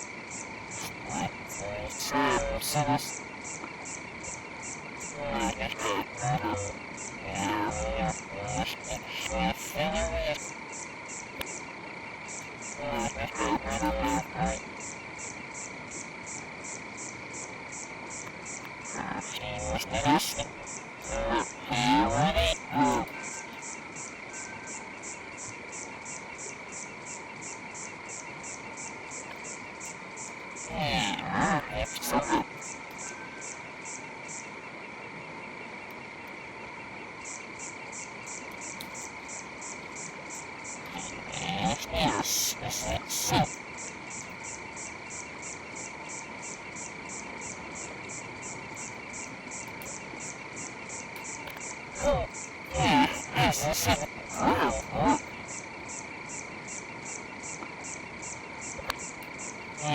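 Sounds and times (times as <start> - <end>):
chorus of calling animals: 0.0 - 10.6, 11.3 - 15.0, 18.4 - 25.0, 29.3 - 33.6, 38.9 - 44.8, 45.9 - 56.4, 58.0 - 59.9.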